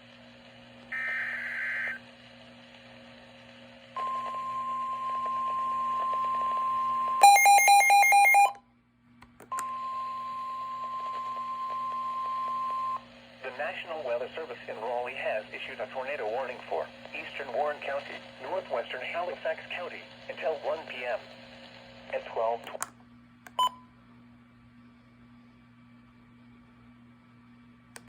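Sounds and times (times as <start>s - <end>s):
steady alarm tone: 0.9s - 2.0s, 4.0s - 8.6s
warbling data tones: 0.9s - 2.0s.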